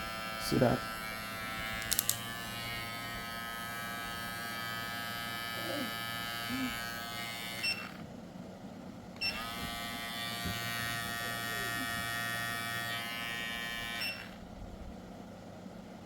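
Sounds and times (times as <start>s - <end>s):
hair clipper motor buzzing: 0.0s - 8.0s, 9.2s - 14.4s
hair clipper beeps: 7.5s - 7.9s, 9.2s - 9.9s, 13.1s - 14.3s.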